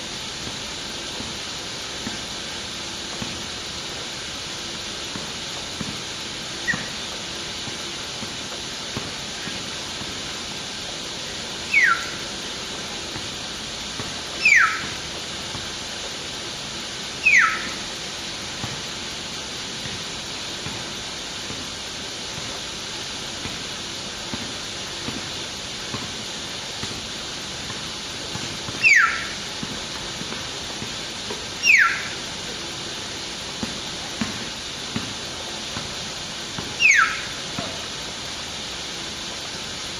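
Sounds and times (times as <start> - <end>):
steady hiss: 0.0 - 39.9
bird whistles falling in pitch: 11.7 - 12.2, 14.4 - 14.9, 17.2 - 17.8, 28.8 - 29.3, 31.6 - 32.2, 36.8 - 37.4.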